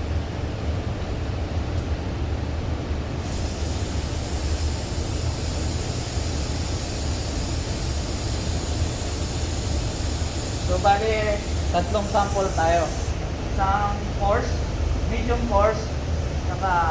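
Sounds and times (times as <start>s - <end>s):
paint spray gun hissing: 3.2s - 13.2s.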